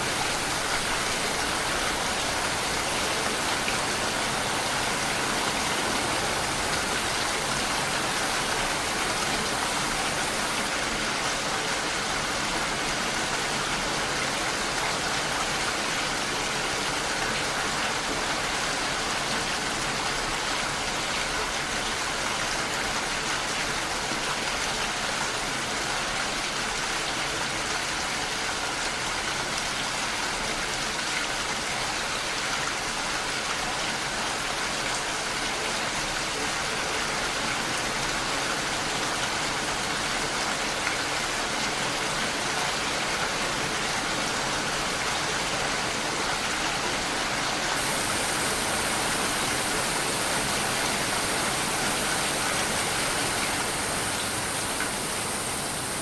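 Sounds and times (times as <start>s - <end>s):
steady rain falling: 0.0s - 12.2s, 47.7s - 56.0s.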